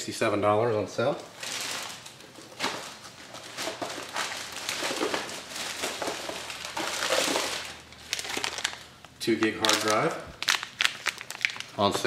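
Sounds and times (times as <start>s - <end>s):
plastic packaging crinkling: 1.3s - 12.0s.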